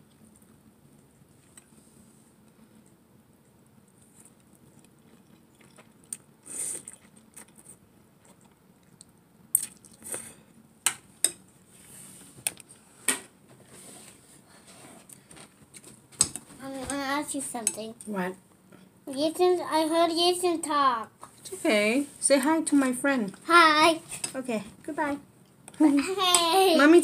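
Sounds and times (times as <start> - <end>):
chewing: 3.9 - 10.2.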